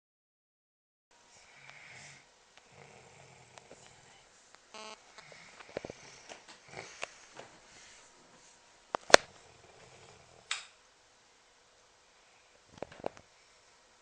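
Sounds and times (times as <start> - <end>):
person snoring softly: 1.3 - 4.3, 5.0 - 8.6, 9.2 - 10.5.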